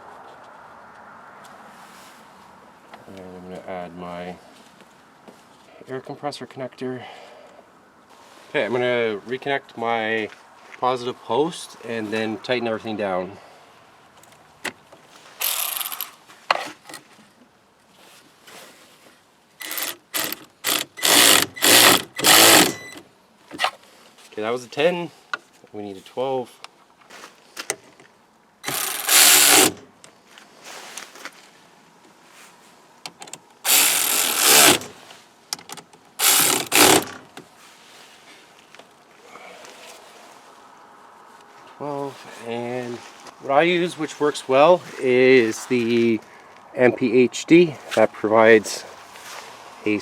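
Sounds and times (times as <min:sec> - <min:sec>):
socket wrench clicking: 0:15.4 - 0:16.1, 0:19.6 - 0:23.0, 0:28.6 - 0:29.8, 0:33.1 - 0:34.9, 0:35.6 - 0:37.2
ratchet ratcheting: 0:15.4 - 0:17.0, 0:19.6 - 0:23.0, 0:28.6 - 0:29.9, 0:33.2 - 0:35.0, 0:36.2 - 0:37.2
rough wrench strokes: 0:15.4 - 0:17.0, 0:19.6 - 0:23.0, 0:28.6 - 0:29.9, 0:33.7 - 0:35.0, 0:36.2 - 0:37.2.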